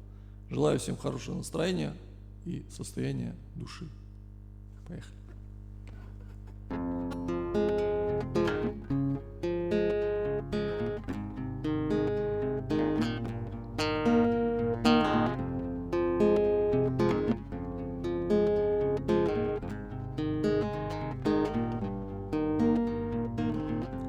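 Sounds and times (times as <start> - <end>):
acoustic guitar strumming: 6.7 - 24.0.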